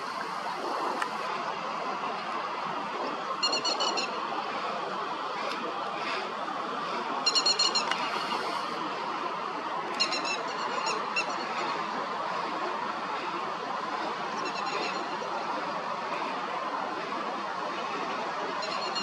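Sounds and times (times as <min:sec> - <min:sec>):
steady background hiss: 0:00.0 - 0:18.7
lapwing calling sharp high notes: 0:07.3 - 0:08.3.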